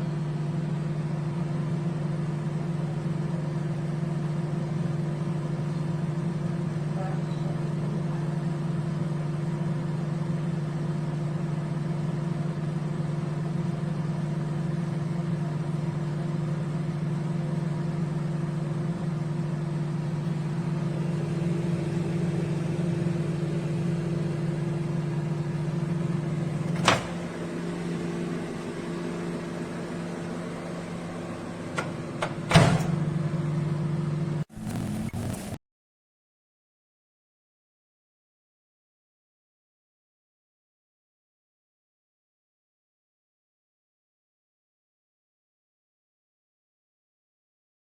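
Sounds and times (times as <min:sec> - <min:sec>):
microwave humming: 0:00.0 - 0:35.6.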